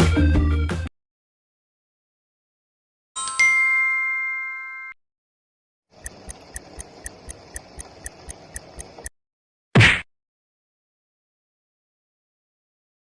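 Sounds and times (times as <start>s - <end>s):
clock ticking: 6.0s - 9.1s.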